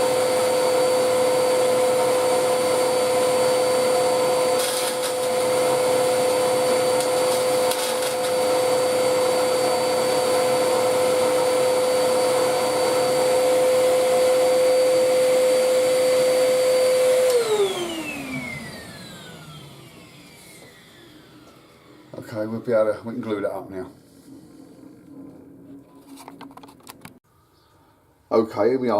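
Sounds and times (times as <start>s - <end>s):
electric motor whining: 0.0s - 22.2s.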